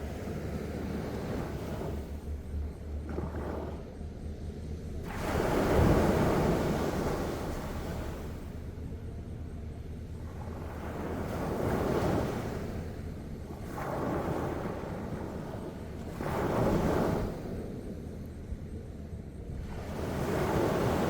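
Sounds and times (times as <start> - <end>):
sea waves breaking: 10.2 - 17.6, 19.7 - 21.0.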